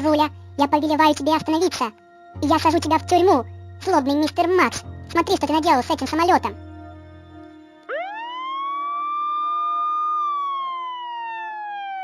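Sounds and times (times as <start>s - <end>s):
siren wailing: 7.8s - 12.0s.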